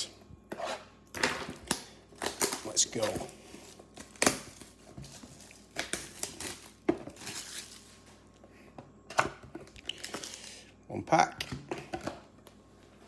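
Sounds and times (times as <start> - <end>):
wrapper crinkling and tearing: 2.2 - 8.2.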